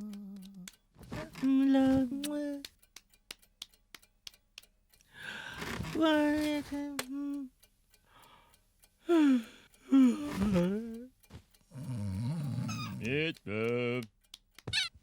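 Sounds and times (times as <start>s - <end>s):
quick ticks: 2.2s - 5.9s, 10.9s - 14.9s
cartoon penguins vocalizing: 12.4s - 15.0s.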